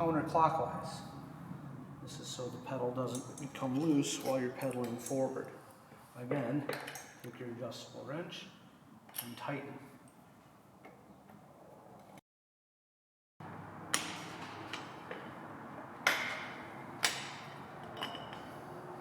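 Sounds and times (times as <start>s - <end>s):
hand tools clicking on metal: 3.1s - 5.3s.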